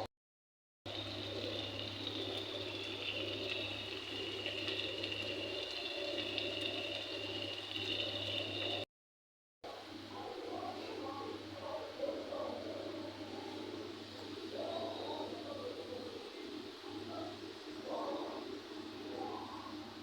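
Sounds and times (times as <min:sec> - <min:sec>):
okra sizzling in a pan: 0:00.9 - 0:08.8.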